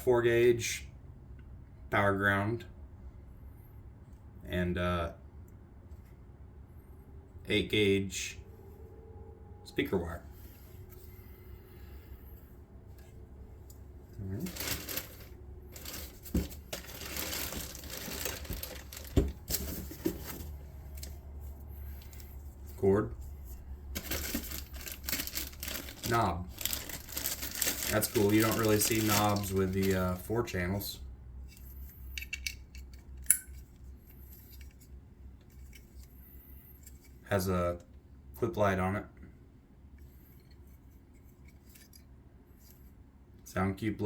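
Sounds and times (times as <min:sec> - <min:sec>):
packaging crinkling and rustling: 0:14.4 - 0:21.2, 0:23.9 - 0:30.2.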